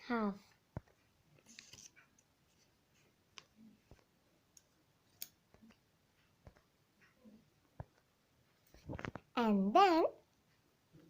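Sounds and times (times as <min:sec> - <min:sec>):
paper rustling while folded: 0:01.4 - 0:02.7.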